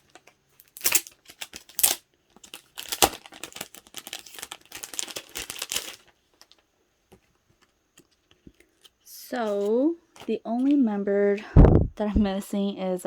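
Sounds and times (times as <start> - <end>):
packaging crinkling: 0.0 - 8.9.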